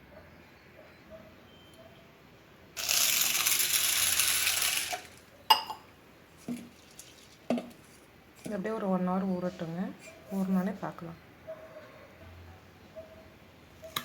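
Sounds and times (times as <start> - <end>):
water pouring into a bowl: 6.5 - 7.7.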